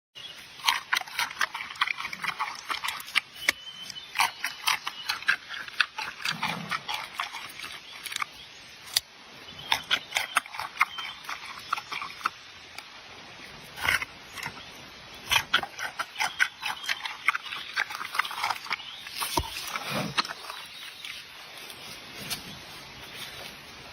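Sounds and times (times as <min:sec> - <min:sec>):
panda chewing bamboo: 0:00.5 - 0:08.3, 0:15.2 - 0:21.2.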